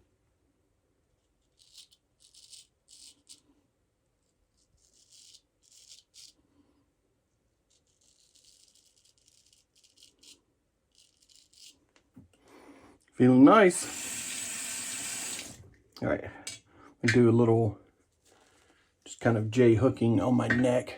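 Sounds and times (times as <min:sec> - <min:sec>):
razor scraping stubble: 0:01.4 - 0:03.4, 0:04.5 - 0:06.4, 0:07.7 - 0:11.8.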